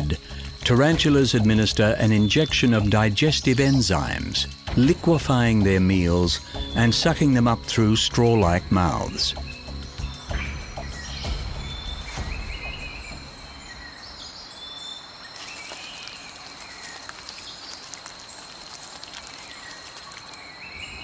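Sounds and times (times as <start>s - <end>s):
high-pitched insect drone: 0.0s - 14.2s
bird chirps and calls: 2.2s - 18.0s.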